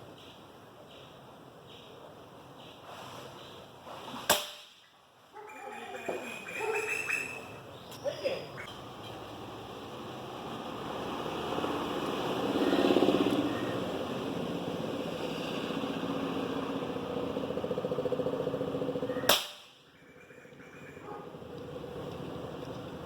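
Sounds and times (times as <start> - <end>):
outdoor background sound: 0.0 - 23.0
air rifle shot: 19.3 - 19.8.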